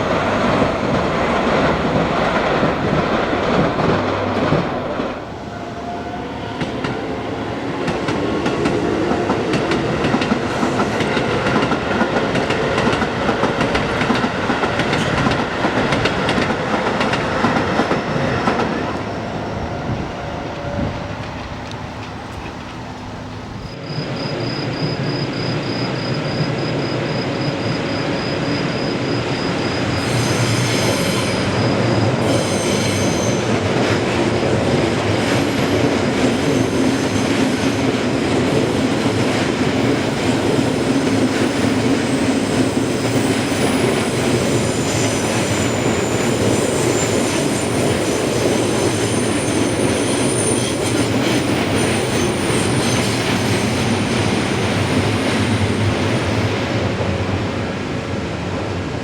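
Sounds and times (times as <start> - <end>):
train wheels rumbling on rails: 0.0 - 59.0
high wheel squeal: 17.9 - 33.6, 40.1 - 56.4.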